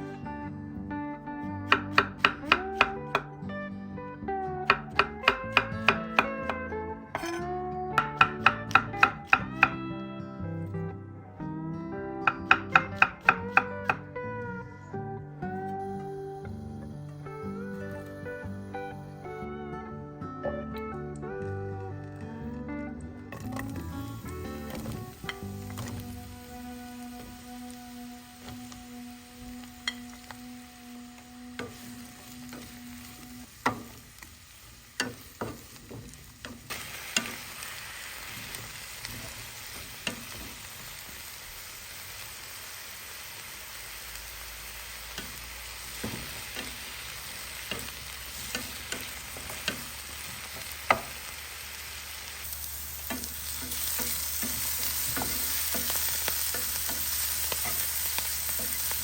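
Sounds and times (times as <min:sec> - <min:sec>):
held musical tone: 0:00.0 - 0:34.2
utensil knocking against pan: 0:01.7 - 0:03.3, 0:04.7 - 0:06.6, 0:08.0 - 0:09.8, 0:12.3 - 0:14.0, 0:33.7 - 0:34.0, 0:50.9 - 0:51.2
food sizzling in oil: 0:04.7 - 0:09.7, 0:23.3 - 0:59.0.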